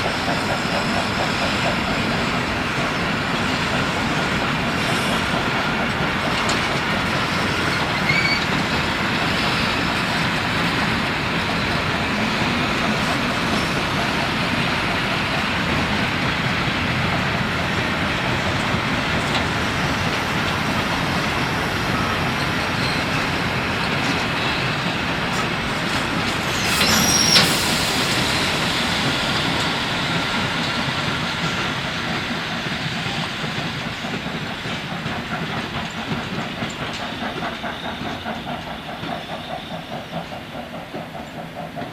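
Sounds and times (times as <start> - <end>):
train wagons rumbling and rattling: 0.0 - 41.9
high squeal: 7.3 - 10.2, 25.8 - 31.7.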